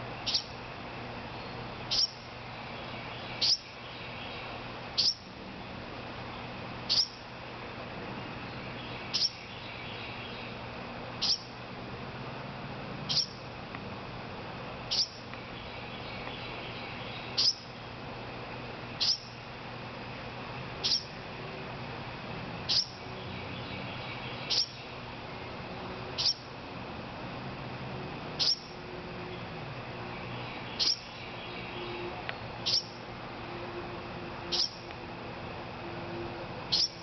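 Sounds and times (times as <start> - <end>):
fledgling bird chirping: 0.2 - 0.6, 1.3 - 7.3, 8.1 - 11.6, 13.0 - 13.5, 14.9 - 17.8, 19.0 - 19.4, 20.6 - 21.3, 22.6 - 25.1, 26.0 - 26.6, 28.3 - 33.0, 34.4 - 34.9, 36.6 - 37.0.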